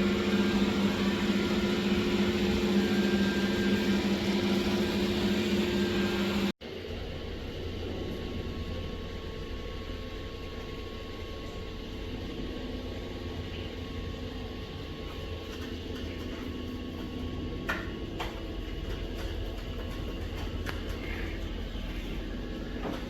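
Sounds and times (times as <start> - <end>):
suction motor running: 0.0 - 6.5.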